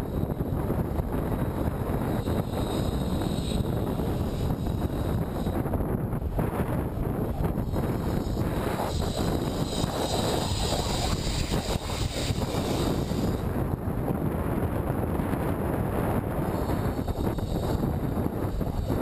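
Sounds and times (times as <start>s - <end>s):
wind buffeting microphone: 0.0s - 19.0s
high hiss: 1.5s - 13.6s, 16.4s - 19.0s.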